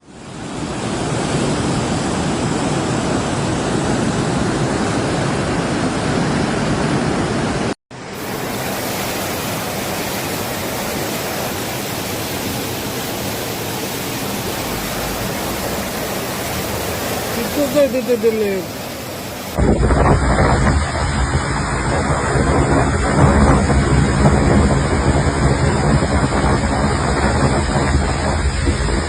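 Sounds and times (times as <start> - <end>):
floodwater rushing: 0.0 - 29.0.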